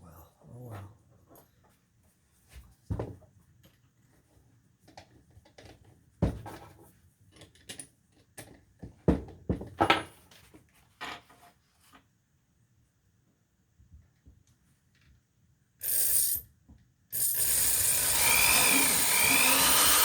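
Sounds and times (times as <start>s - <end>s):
drill bit rubbing plastic: 17.2s - 20.0s.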